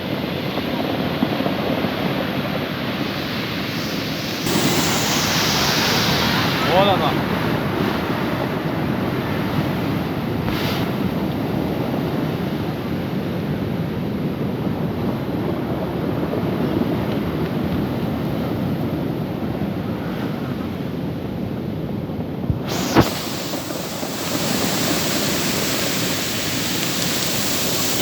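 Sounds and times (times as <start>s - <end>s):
wind buffeting microphone: 0.2s - 20.5s, 22.4s - 28.0s
waves breaking: 2.4s - 11.0s, 22.6s - 28.0s.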